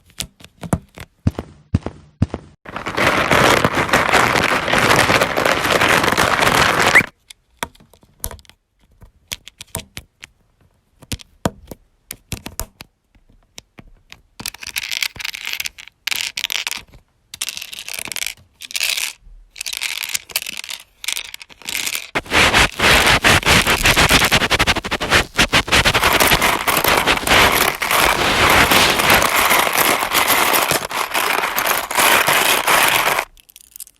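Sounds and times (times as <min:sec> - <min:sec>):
plastic bricks scraping: 0:02.7 - 0:07.1, 0:21.6 - 0:33.4
plastic bricks clicking: 0:26.0 - 0:33.9.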